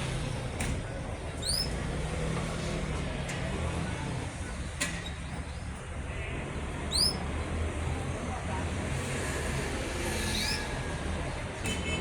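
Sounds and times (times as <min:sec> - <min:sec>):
bird chirping: 0:01.4 - 0:01.8, 0:06.9 - 0:07.3.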